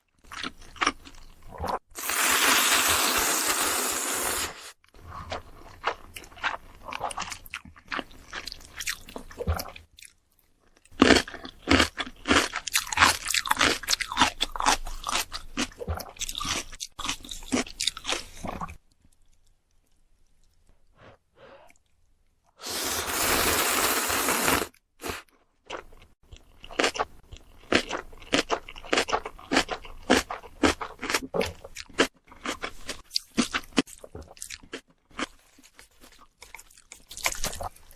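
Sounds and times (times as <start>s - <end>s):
person slurping noodles: 1.5s - 4.8s, 22.6s - 25.3s.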